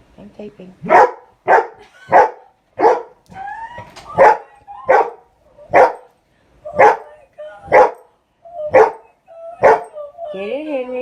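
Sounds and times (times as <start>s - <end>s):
dog barking: 0.9s - 3.2s, 4.2s - 6.1s, 6.8s - 7.1s, 7.7s - 8.1s, 8.7s - 9.0s, 9.6s - 9.9s
dog whining: 6.8s - 10.5s.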